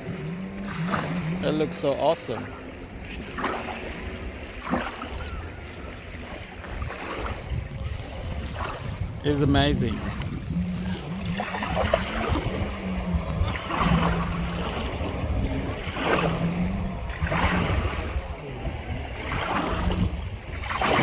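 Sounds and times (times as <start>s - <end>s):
jet ski engine droning: 0.0s - 21.0s
wind rumbling on microphone: 0.0s - 21.0s.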